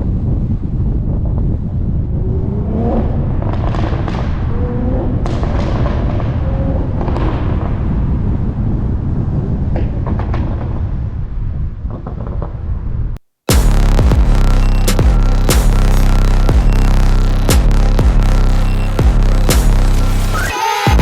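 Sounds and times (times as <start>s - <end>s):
exhaust popping and crackling: 3.1s - 8.1s, 13.5s - 20.4s.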